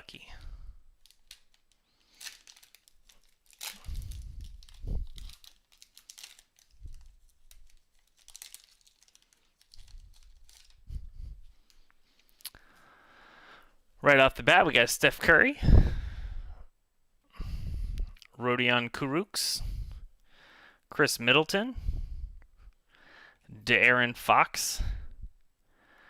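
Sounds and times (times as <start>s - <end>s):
card pack wrapper tearing and crinkling: 1.0s - 10.9s.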